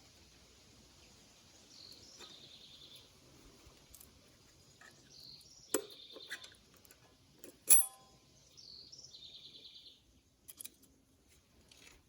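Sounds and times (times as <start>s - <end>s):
metal brake parts clinking: 7.4s - 8.2s.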